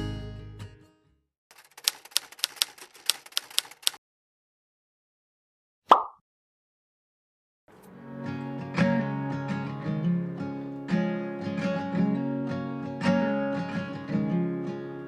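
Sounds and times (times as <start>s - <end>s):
typewriter keystrokes: 1.5s - 4.0s.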